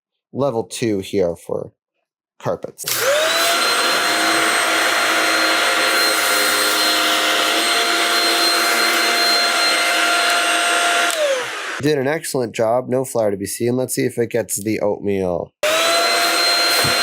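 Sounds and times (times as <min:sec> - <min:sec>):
stick vacuum running on carpet: 0:02.9 - 0:11.8, 0:15.6 - 0:17.0.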